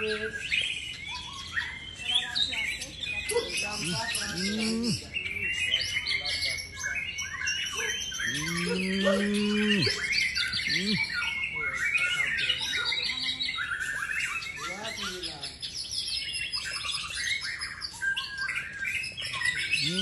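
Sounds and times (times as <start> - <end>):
bird singing whistles and trills: 0.0 - 20.0
low drawn-out bird call: 3.8 - 5.0, 8.2 - 11.1, 19.7 - 20.0.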